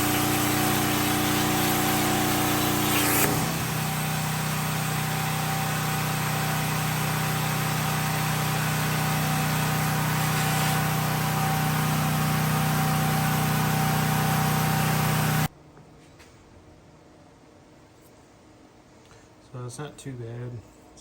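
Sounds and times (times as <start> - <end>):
plasma cutter torch hissing: 0.0 - 15.5.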